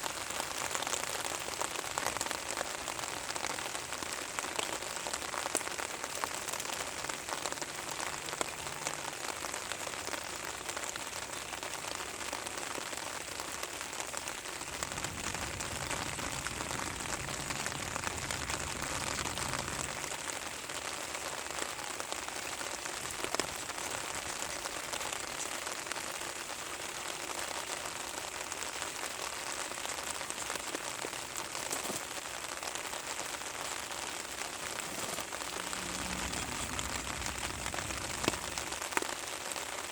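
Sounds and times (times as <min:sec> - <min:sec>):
rain pattering on a surface: 0:00.0 - 0:39.9
low rumble: 0:14.7 - 0:20.0, 0:35.2 - 0:38.8.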